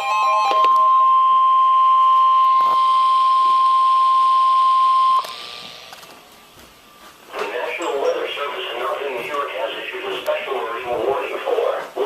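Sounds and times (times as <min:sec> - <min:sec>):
steady alarm beep: 0:00.5 - 0:05.4
radio hiss: 0:07.2 - 0:12.0.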